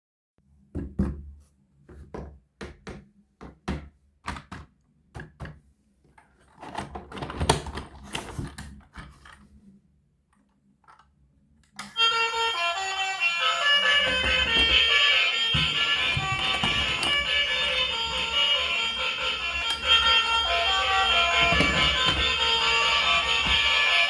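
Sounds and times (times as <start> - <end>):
music: 11.8 - 24.0
rattling clatter: 14.0 - 18.5, 19.6 - 24.0
sharp knocks and clicks: 14.1 - 18.4, 19.6 - 24.0.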